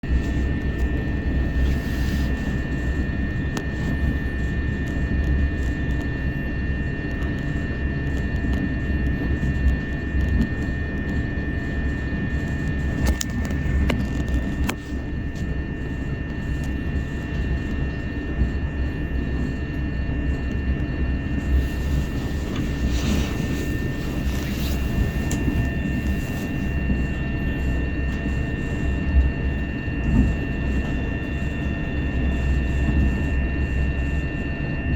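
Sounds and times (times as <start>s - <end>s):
high-pitched train whine: 14.6s - 34.9s.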